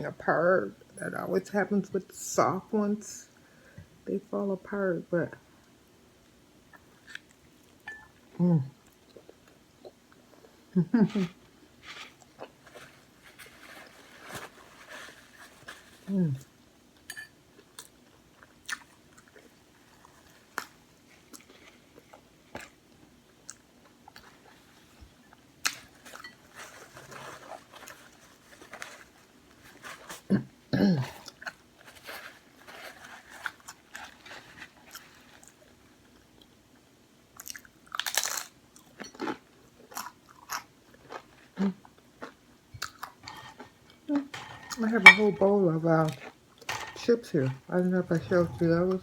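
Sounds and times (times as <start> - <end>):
person eating crunchy food: 8.9 - 16.5, 37.4 - 47.1.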